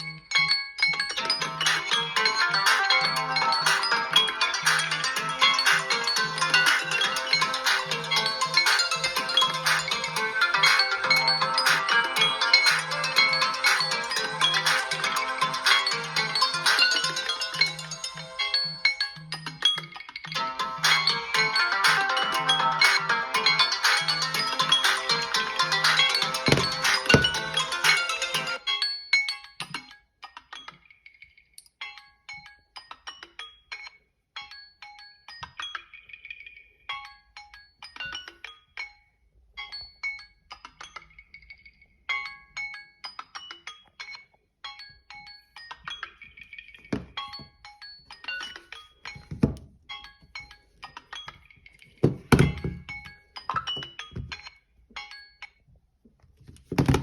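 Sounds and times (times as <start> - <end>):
phone alarm chiming tune: 0.0 - 28.8
phone alarm chimes: 20.8 - 28.6.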